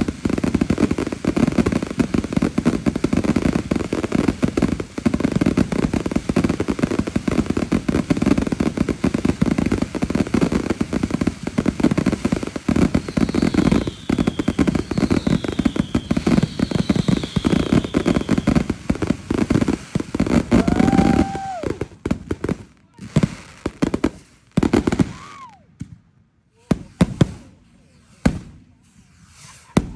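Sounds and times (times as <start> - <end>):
fireworks falling whistles: 0.0 - 22.2, 23.2 - 29.9
fireworks popping and crackling: 0.0 - 29.9
steady whistling tone: 13.0 - 18.6.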